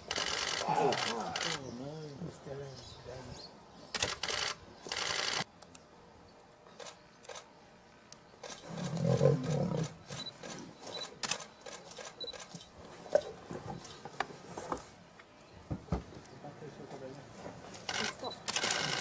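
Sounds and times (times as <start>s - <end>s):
sharp clicks: 3.9s - 5.8s, 10.1s - 12.7s.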